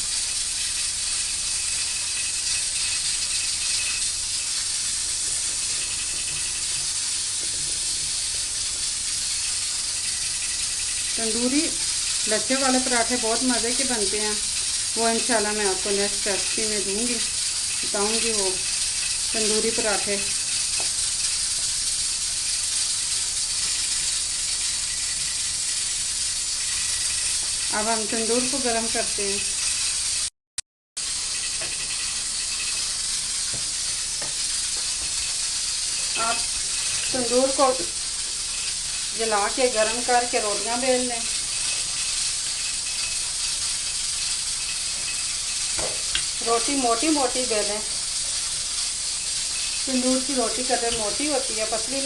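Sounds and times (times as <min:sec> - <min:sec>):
steady high hiss: 0:00.0 - 0:30.3, 0:31.0 - 0:52.0.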